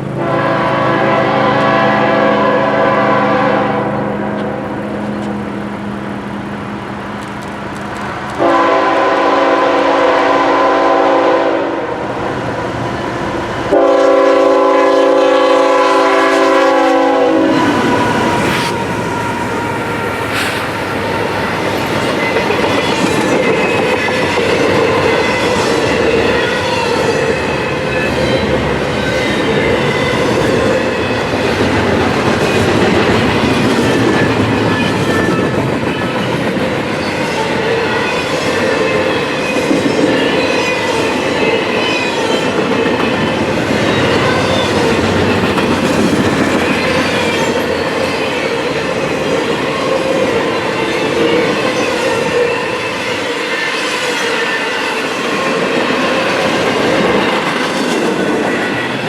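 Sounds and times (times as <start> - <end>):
locomotive air horn blasts: 0.2 - 4.8, 8.4 - 12.0, 13.7 - 20.7
train wheels clacking over rail joints: 17.6 - 49.7.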